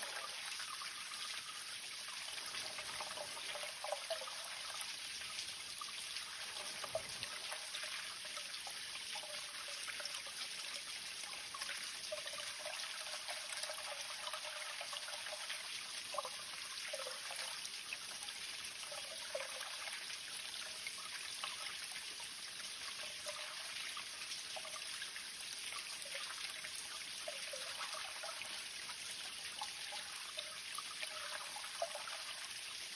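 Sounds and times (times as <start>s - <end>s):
spring water trickling: 0.0s - 10.6s.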